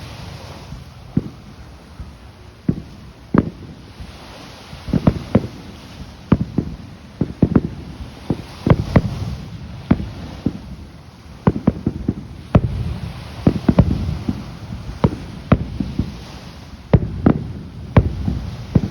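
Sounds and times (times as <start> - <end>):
fireworks bangs: 0.0 - 18.9
low rumbling: 4.9 - 18.9.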